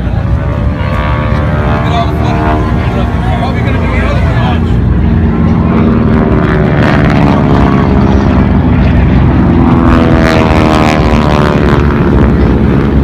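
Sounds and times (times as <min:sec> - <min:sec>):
propeller airplane engine drone: 0:00.0 - 0:13.0.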